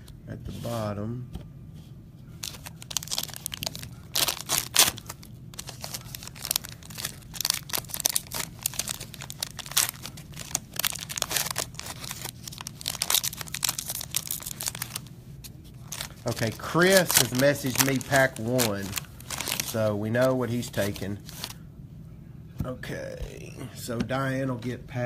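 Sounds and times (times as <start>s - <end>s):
wrapping crinkling and tearing: 2.4s - 21.6s.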